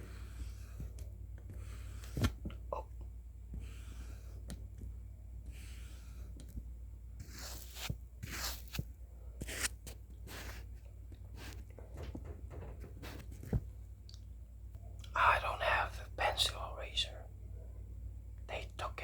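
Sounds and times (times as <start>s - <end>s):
low steady hum: 0.0s - 19.0s
short scratchy strokes: 7.2s - 8.8s.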